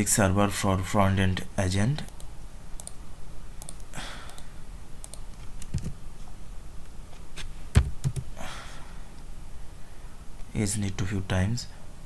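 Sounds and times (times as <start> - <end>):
computer keyboard keys clicking: 7.8 - 8.3.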